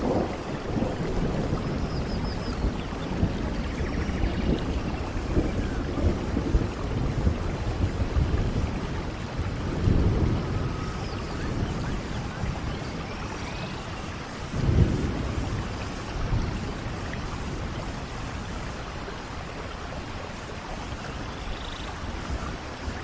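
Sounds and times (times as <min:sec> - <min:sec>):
steady rain falling: 0:00.0 - 0:23.0
thunder rumbling: 0:00.0 - 0:23.0.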